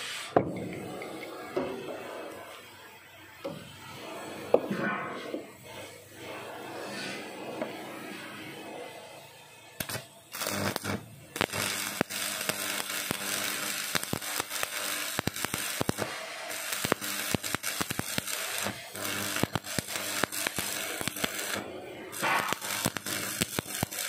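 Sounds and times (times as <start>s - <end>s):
electric arc welding crackle: 9.7s - 24.0s.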